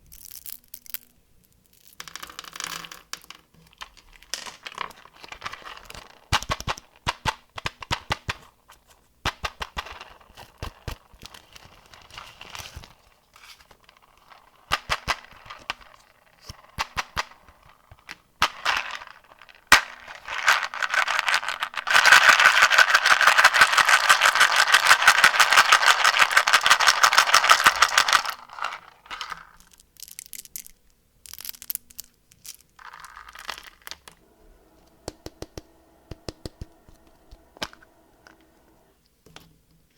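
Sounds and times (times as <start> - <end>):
plastic wrapper crinkling: 3.7 - 7.1, 10.0 - 34.2.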